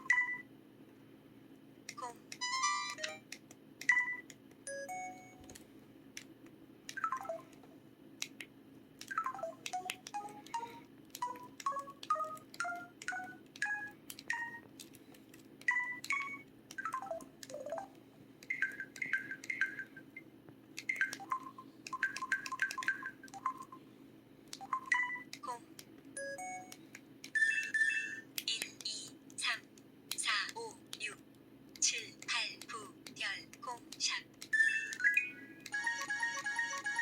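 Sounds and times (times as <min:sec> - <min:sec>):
phone electronic beeps: 0:20.9 - 0:23.8.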